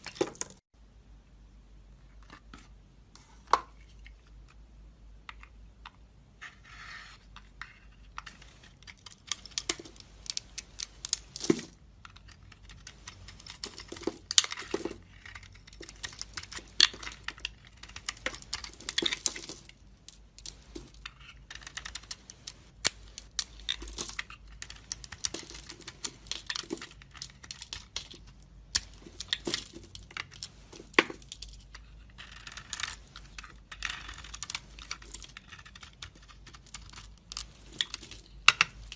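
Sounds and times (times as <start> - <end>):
soap cubes crunching: 8.9 - 38.9.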